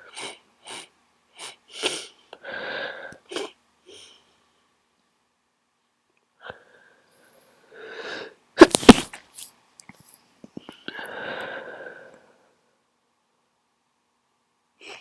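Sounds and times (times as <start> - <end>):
person sneezing: 8.6 - 9.2.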